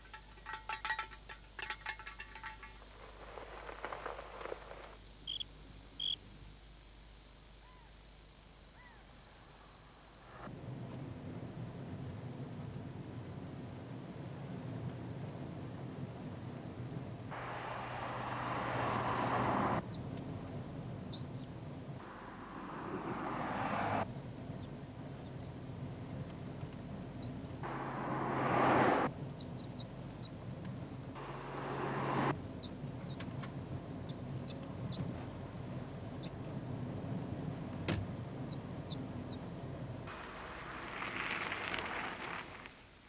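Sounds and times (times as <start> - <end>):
car running noise: 10.5 - 42.7
high-pitched squeaks: 21.1 - 21.5, 27.2 - 33.2, 33.9 - 36.6, 38.5 - 39.5.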